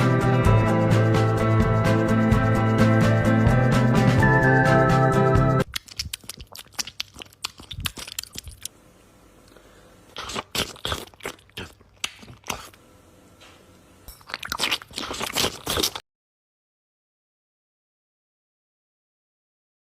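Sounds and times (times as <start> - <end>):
irregular crunching and clicking: 5.6 - 8.8, 10.2 - 12.8.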